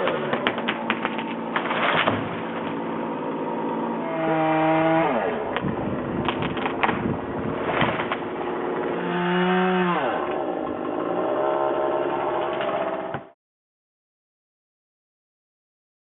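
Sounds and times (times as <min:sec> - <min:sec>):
chainsaw revving: 0:02.6 - 0:06.8, 0:07.5 - 0:13.1.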